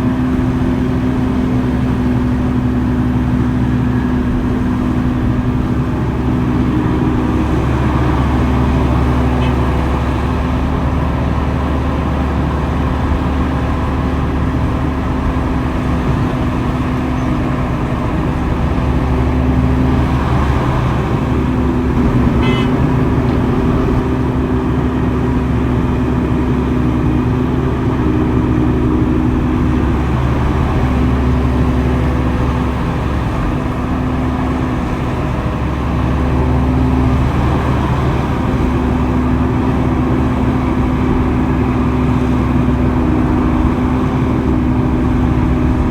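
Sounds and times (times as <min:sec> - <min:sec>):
diesel engine humming: 0:00.0 - 0:45.9
high-pitched tone: 0:22.0 - 0:22.9.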